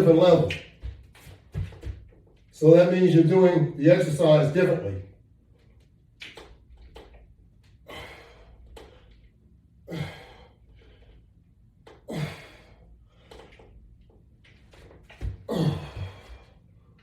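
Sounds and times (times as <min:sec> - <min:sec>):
man breathing hard: 0:07.7 - 0:11.4, 0:12.0 - 0:13.7, 0:15.4 - 0:17.0.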